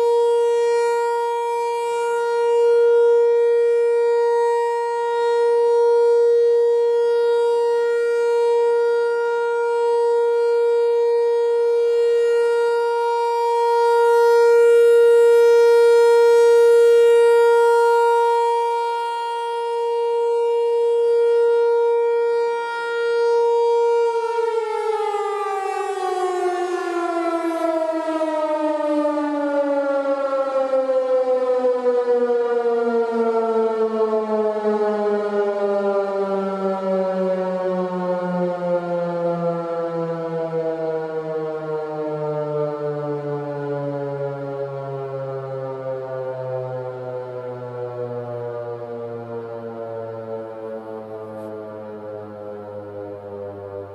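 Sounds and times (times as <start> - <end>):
electromechanical siren: 0.0 - 53.9.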